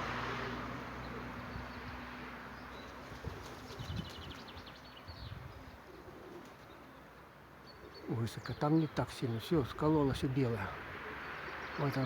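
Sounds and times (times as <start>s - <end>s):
wind buffeting microphone: 3.2s - 5.7s.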